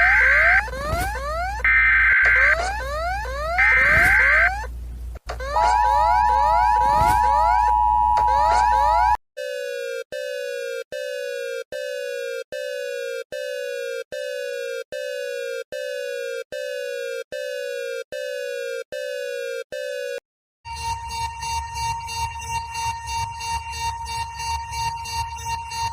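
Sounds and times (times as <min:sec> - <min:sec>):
pulsing alert tone: 0:00.0 - 0:04.7, 0:05.5 - 0:09.8
rising electronic sweeps: 0:00.0 - 0:04.7
steady alert tone: 0:00.0 - 0:04.7.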